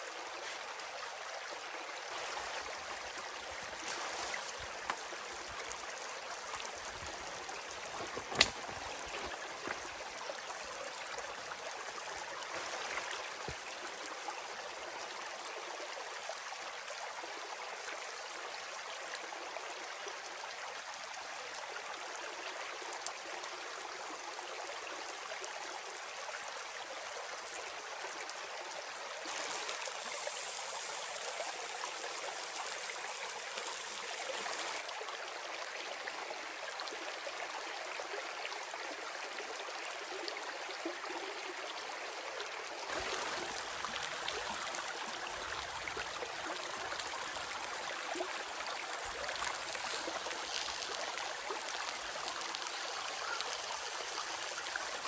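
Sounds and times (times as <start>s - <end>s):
running water rushing: 0.0s - 15.4s, 28.3s - 35.1s, 41.3s - 55.0s.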